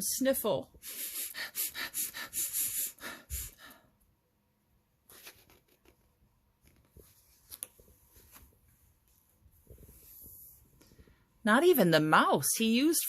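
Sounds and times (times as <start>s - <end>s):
person sniffling: 0.8s - 3.9s.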